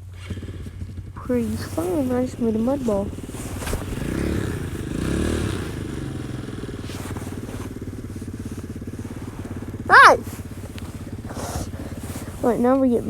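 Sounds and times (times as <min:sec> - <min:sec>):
small engine idling: 0:00.0 - 0:13.0.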